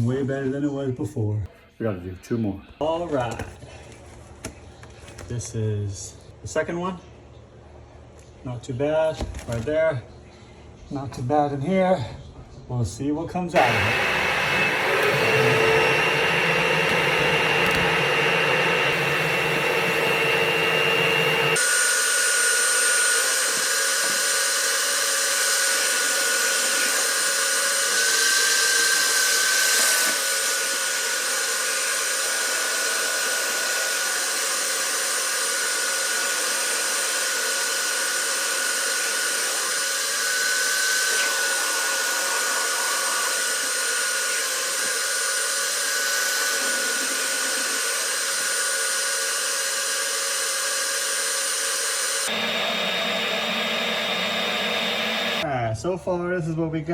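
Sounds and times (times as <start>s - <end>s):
motor whine: 13.6s - 24.2s, 36.0s - 55.4s.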